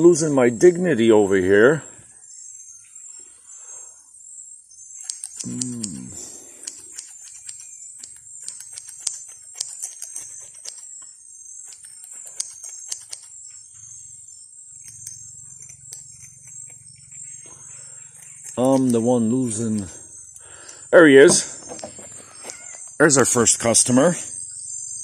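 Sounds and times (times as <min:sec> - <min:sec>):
insect chorus buzzing: 0:00.0 - 0:25.0
sharp clicks: 0:05.0 - 0:13.4, 0:14.8 - 0:17.1, 0:18.2 - 0:20.9.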